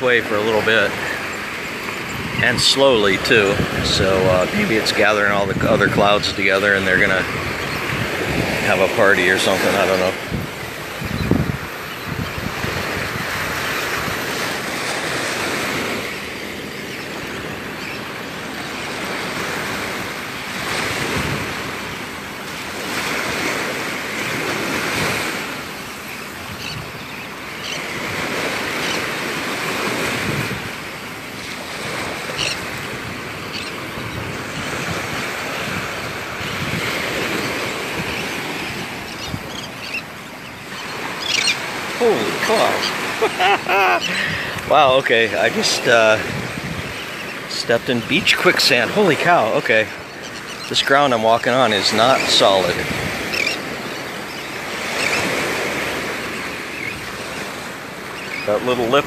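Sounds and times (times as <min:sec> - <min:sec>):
wind buffeting microphone: 0:00.0 - 0:22.0, 0:26.4 - 0:30.9, 0:31.7 - 0:48.4
small waves breaking on beach: 0:00.0 - 0:59.0.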